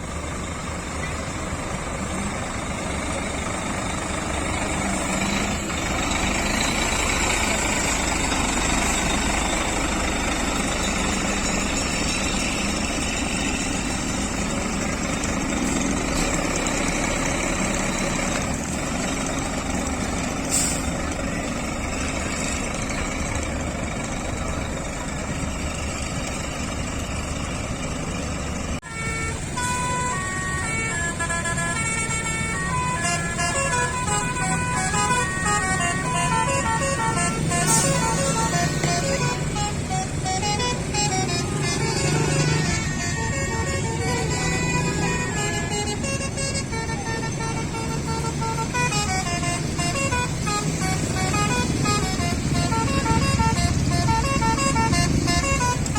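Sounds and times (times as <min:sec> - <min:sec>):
truck engine running: 0:00.0 - 0:55.9
multi-tone truck horn tune: 0:28.8 - 0:55.9.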